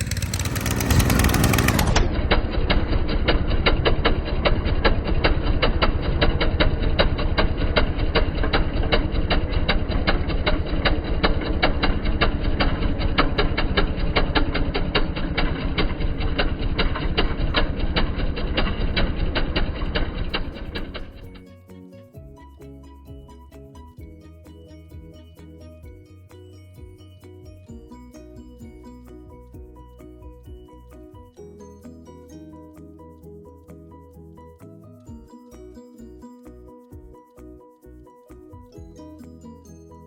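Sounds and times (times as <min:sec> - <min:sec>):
small rototiller engine running: 0:00.0 - 0:21.4.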